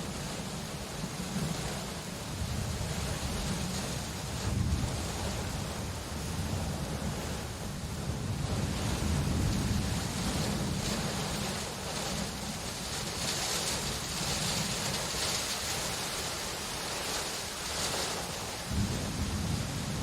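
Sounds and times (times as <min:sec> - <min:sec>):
rain hiss: 0:00.0 - 0:20.0.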